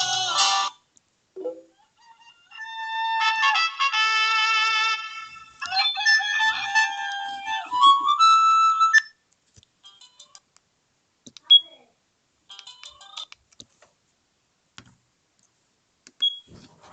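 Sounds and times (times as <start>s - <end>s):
phone ringtone melody: 3.9s - 9.1s.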